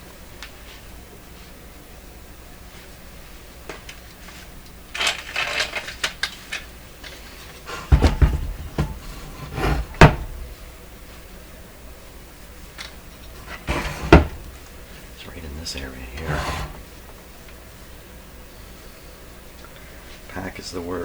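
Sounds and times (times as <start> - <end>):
knocks and bumps: 7.7 - 10.8, 13.3 - 16.9.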